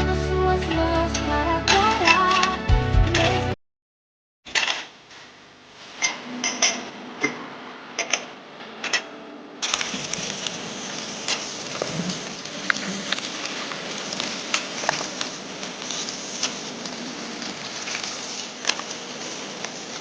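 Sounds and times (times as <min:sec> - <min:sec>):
steady hiss: 0:09.6 - 0:20.0.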